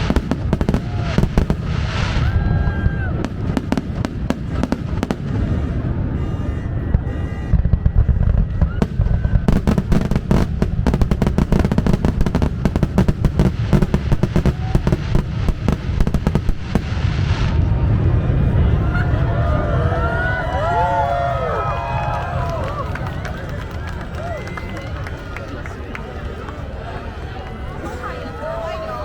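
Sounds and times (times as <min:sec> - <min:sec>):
fireworks exploding: 0:00.0 - 0:19.5.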